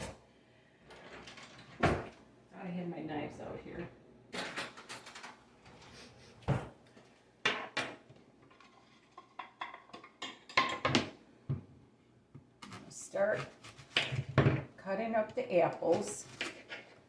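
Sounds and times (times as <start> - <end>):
kitchenware clinking and clattering: 4.3 - 5.5, 7.5 - 11.2.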